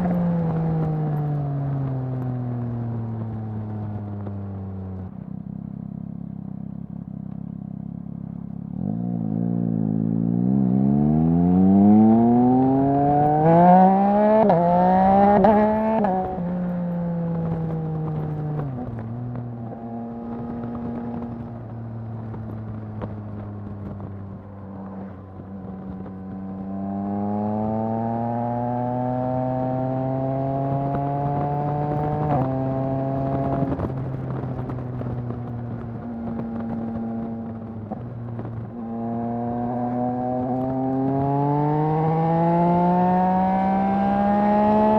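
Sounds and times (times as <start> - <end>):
motorcycle engine accelerating: 0.0 - 44.9
quick gear upshifts: 0.0 - 44.9.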